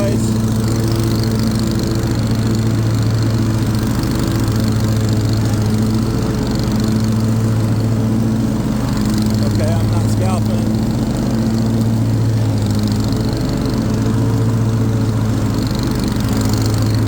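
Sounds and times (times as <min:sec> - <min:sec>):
mower blades spinning: 0:00.0 - 0:17.0
mower engine running: 0:00.0 - 0:17.0.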